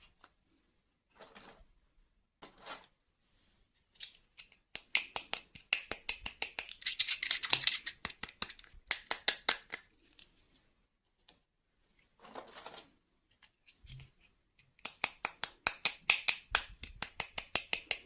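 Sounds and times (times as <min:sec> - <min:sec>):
plastic toy packaging clicks and crinkles: 0:06.6 - 0:08.8.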